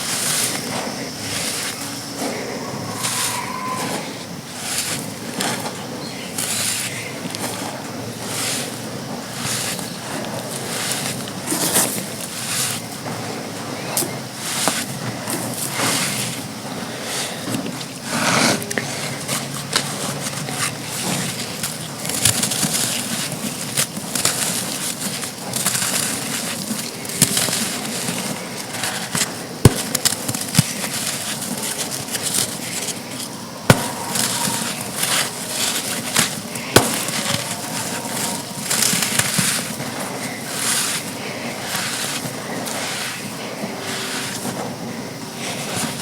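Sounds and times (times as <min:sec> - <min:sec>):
dry sand crunching: 0:00.0 - 0:46.0
sharp cracks: 0:29.1 - 0:39.8.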